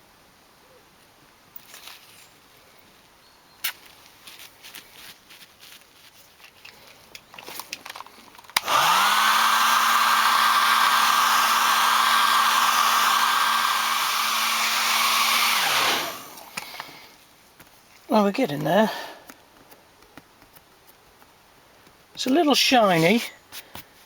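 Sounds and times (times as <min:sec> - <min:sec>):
heat gun fan blowing hum: 0:08.6 - 0:17.0.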